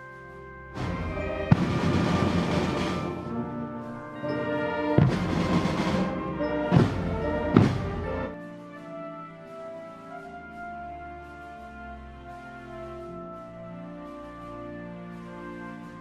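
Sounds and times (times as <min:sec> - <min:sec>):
solemn brass music: 0:00.0 - 0:16.0
drum and cymbal strikes: 0:00.8 - 0:08.3.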